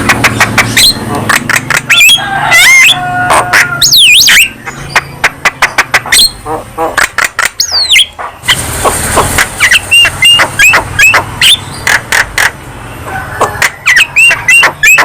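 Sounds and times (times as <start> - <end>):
bird singing clicks and whistles: 7.0 - 8.3.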